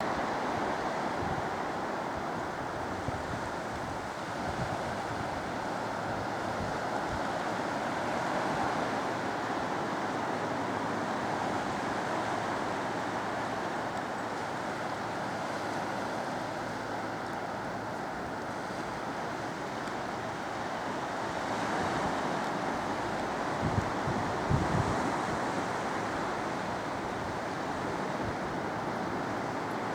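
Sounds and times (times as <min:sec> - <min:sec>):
surf breaking on a beach: 0:00.0 - 0:29.9
wind: 0:00.0 - 0:29.9
wind gusts buffeting microphone: 0:21.2 - 0:29.6.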